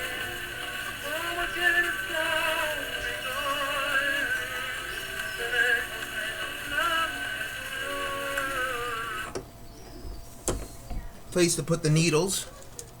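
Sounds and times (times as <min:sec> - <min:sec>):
phonograph record of person singing: 0:00.0 - 0:09.4.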